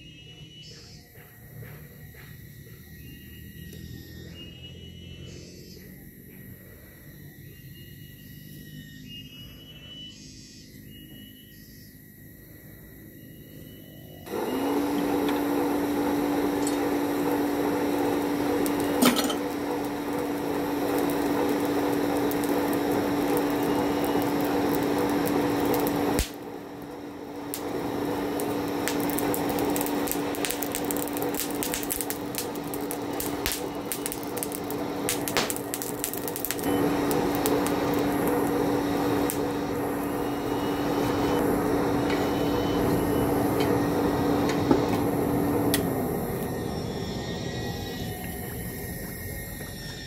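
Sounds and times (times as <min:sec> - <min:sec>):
power tool motor humming: 0:14.3 - 0:50.0.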